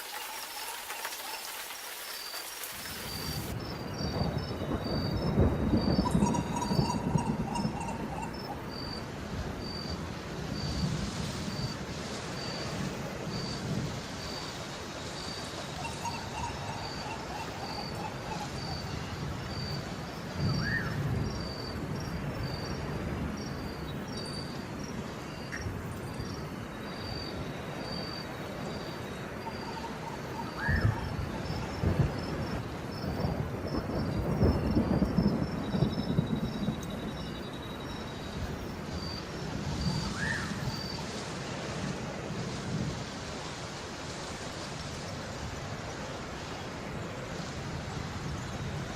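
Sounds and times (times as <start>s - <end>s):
steady rain: 0.0s - 48.9s
thunder rumbling: 3.1s - 8.8s, 30.6s - 40.8s.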